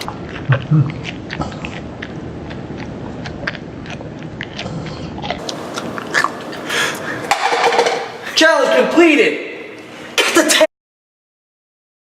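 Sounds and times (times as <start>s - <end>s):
person chewing crunchy food: 0.0s - 7.3s.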